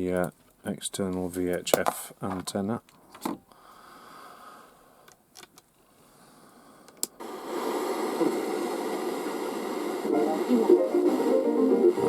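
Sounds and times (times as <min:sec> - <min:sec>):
radio static hiss: 0:07.2 - 0:12.0.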